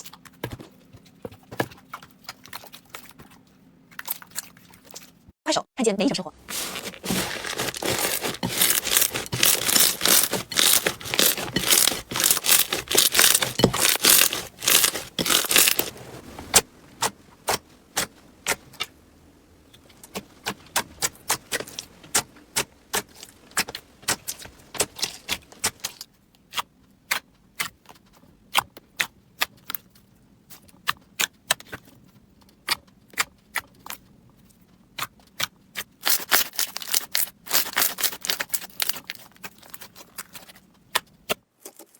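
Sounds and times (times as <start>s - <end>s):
slime crackling and popping: 6.5s - 16.0s, 36.0s - 41.1s.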